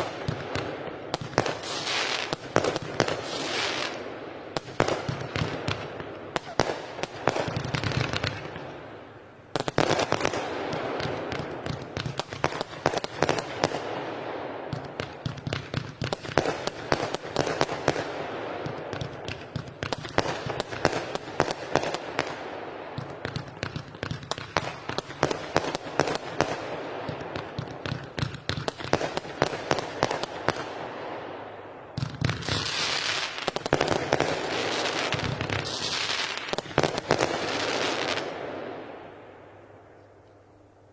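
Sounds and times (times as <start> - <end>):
fireworks crackling bursts: 0.0 - 40.0.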